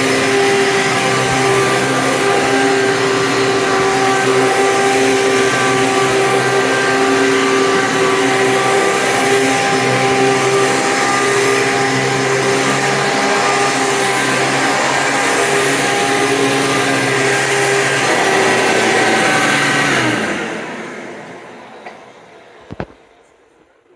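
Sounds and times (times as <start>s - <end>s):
upright vacuum cleaner running: 0.0s - 23.0s.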